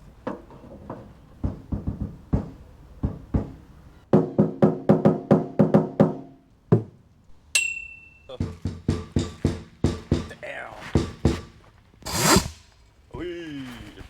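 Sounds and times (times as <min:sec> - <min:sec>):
high ringing tone: 0:07.6 - 0:08.4.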